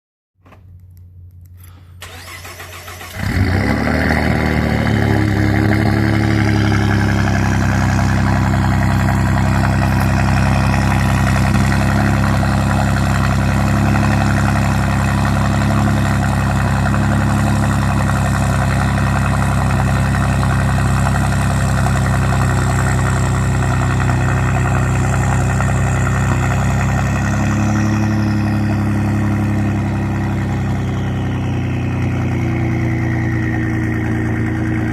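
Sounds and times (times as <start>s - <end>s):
car engine idling: 1.2s - 34.9s
starter motor cranking: 2.0s - 3.4s.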